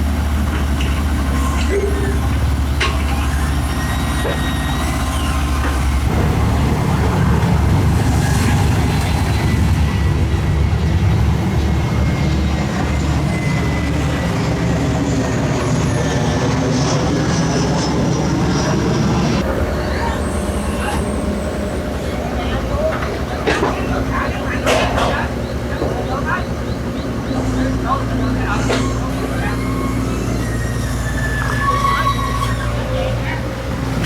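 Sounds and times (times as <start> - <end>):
excavator diesel engine rumbling: 0.0 - 34.0.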